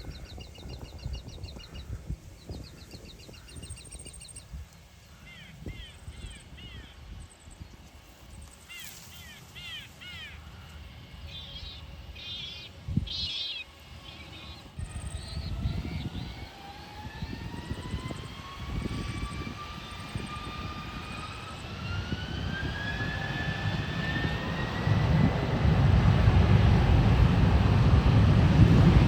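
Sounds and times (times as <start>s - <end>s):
birds calling: 0.0s - 16.3s
jet engine whine: 0.0s - 29.0s
low jet engine rumble: 0.0s - 29.0s.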